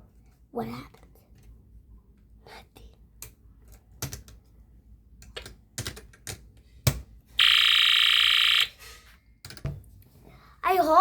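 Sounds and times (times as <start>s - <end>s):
electronic alarm-like buzz: 7.4s - 8.7s.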